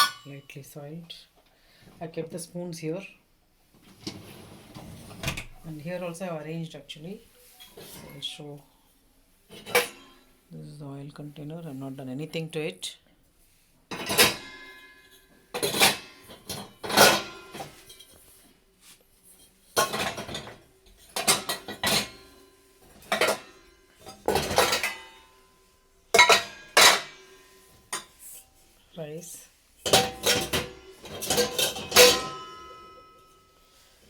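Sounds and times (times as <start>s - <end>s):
metal kitchenware clattering: 0.0s - 0.6s, 9.5s - 10.3s, 13.9s - 18.3s, 19.3s - 25.5s, 26.1s - 28.4s, 29.8s - 33.6s.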